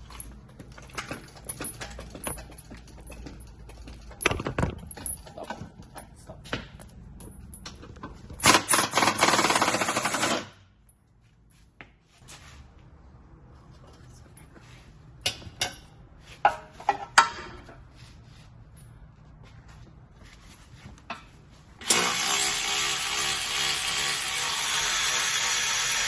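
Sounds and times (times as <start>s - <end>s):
hand tools clicking and knocking: 0.0s - 10.5s
impact wrench hammering: 8.4s - 10.6s.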